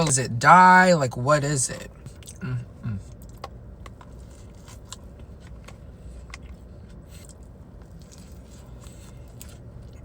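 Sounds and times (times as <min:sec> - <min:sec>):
chewing and mouth smacks: 0:02.0 - 0:10.0.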